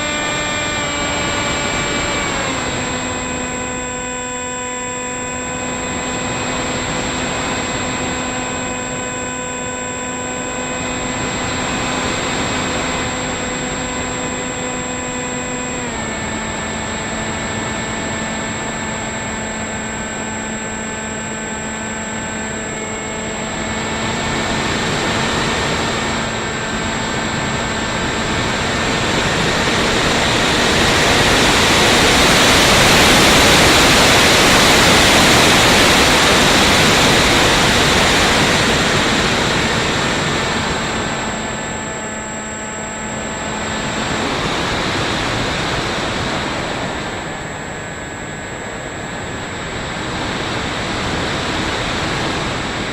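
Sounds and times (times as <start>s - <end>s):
electric motor whine: 0.0s - 52.9s
rushing air noise: 23.0s - 52.9s.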